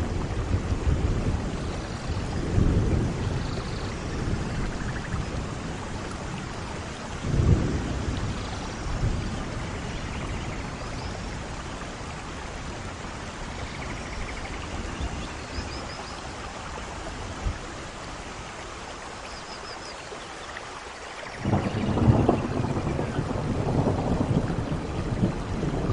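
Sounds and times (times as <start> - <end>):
rolling thunder: 0.0 - 6.4, 7.2 - 11.6, 21.3 - 25.9
steady rainfall: 0.0 - 25.9.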